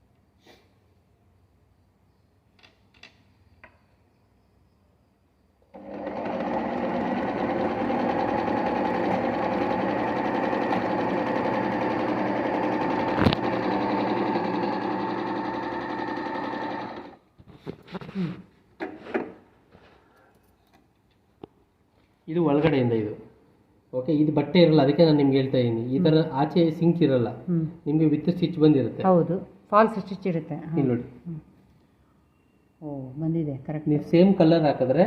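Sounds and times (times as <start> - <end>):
sewing machine stitching: 5.7 - 17.2.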